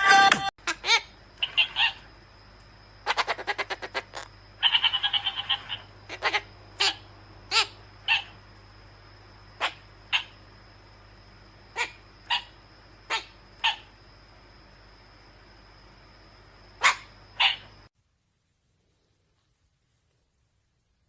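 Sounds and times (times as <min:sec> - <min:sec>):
bird chirping: 0:00.7 - 0:02.1, 0:03.0 - 0:08.4, 0:09.6 - 0:10.4, 0:16.8 - 0:17.7
buzzy pulsing bird call: 0:00.7 - 0:02.1, 0:03.0 - 0:08.4.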